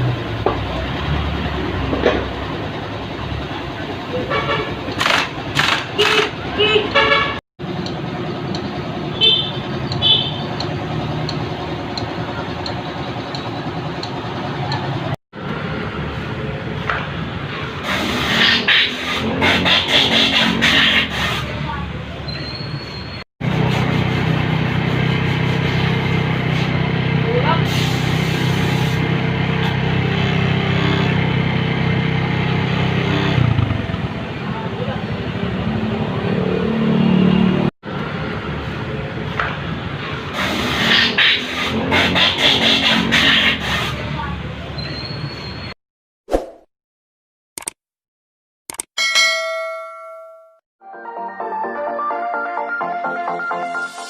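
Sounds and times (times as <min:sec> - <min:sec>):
motor traffic: 0:00.0 - 0:45.8
motorcycle engine running: 0:28.6 - 0:35.8.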